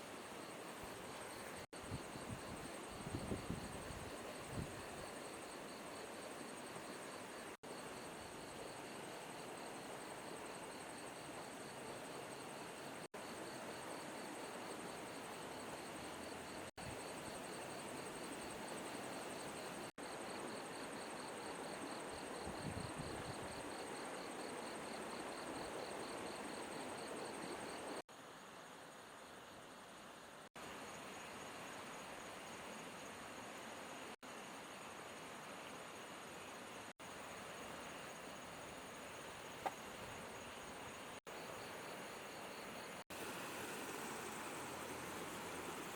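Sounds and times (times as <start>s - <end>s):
flowing river water: 26.6s - 45.9s
insects chirring: 37.0s - 45.9s.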